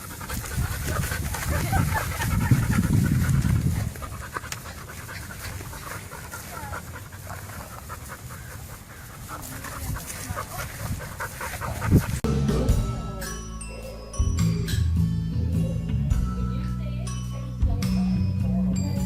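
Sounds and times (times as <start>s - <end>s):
dog panting: 0.0s - 12.2s.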